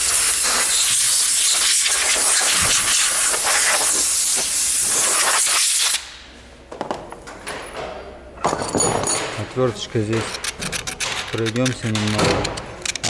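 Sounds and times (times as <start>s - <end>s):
compressed air blow gun hissing: 0.0s - 6.1s.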